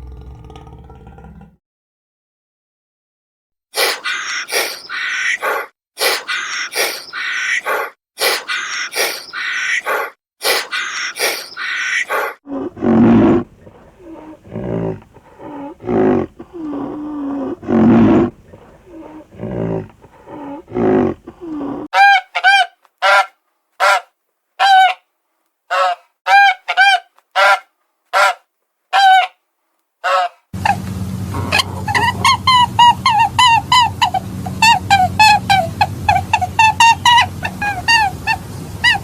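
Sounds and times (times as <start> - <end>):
low grunting animal calls: 0.0 - 1.6, 3.8 - 21.9, 30.0 - 39.0
short high-pitched animal calls: 3.8 - 12.4.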